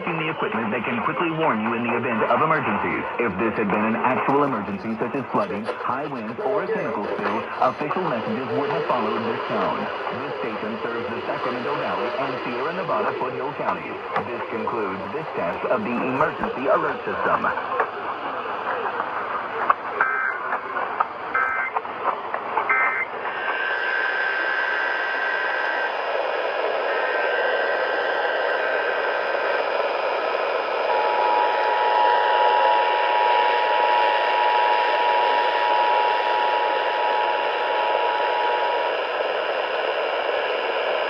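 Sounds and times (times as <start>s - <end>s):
radio hiss: 0.0s - 41.0s
steady high tone: 2.3s - 18.9s
data tone bursts: 5.3s - 13.6s.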